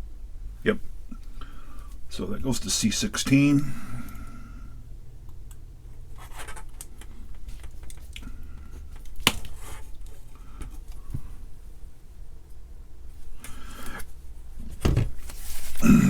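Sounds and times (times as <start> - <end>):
low steady hum: 0.0 - 16.0
small clicks and scratches: 5.4 - 11.2.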